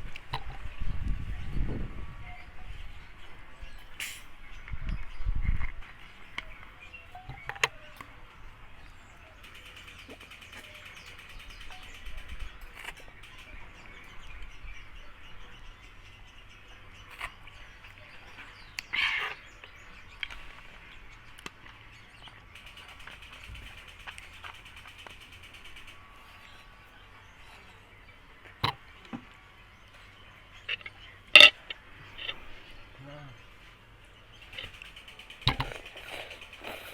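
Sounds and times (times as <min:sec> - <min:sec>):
faint birds chirping: 0:00.0 - 0:36.9
sharp clicks: 0:22.6 - 0:26.0, 0:34.4 - 0:36.9
chewing: 0:34.5 - 0:36.9.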